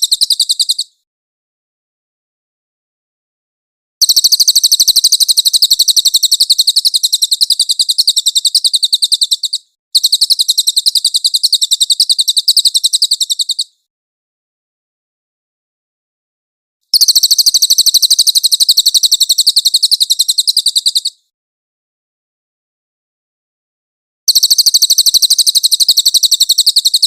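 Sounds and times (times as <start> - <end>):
songbird high rapid trill: 0.0 - 0.9, 4.0 - 13.7, 16.9 - 21.2, 24.3 - 27.0.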